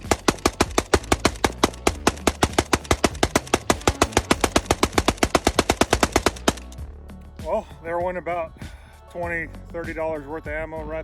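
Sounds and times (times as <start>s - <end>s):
rapid rifle gunfire: 0.0s - 6.8s.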